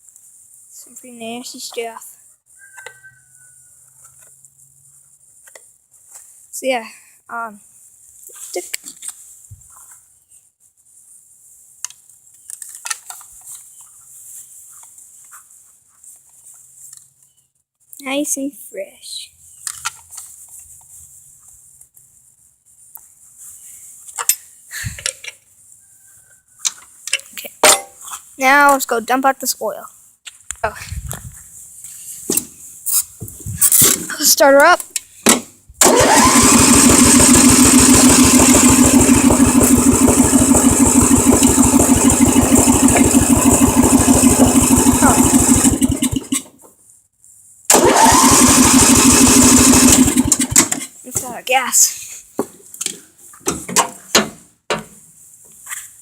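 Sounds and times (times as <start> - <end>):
starter cranking mower engine: 35.8 - 46.6, 47.7 - 50.8.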